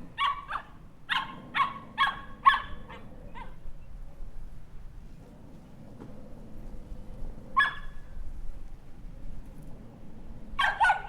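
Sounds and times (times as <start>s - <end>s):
puppy barking: 0.2s - 3.6s, 7.6s - 8.0s, 10.6s - 11.0s.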